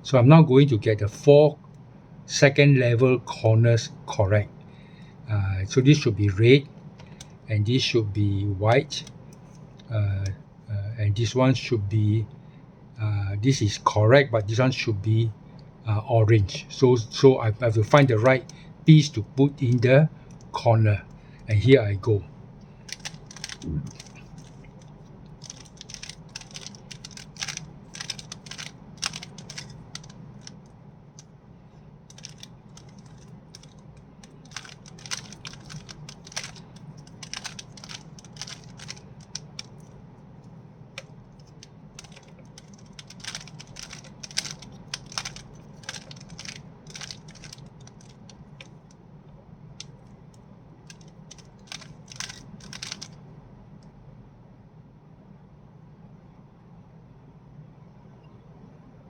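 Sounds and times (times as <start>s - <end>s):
plastic cube clicking as twisted: 17.8s - 19.8s, 22.9s - 30.6s, 32.1s - 39.9s, 41.0s - 48.8s, 50.9s - 53.2s.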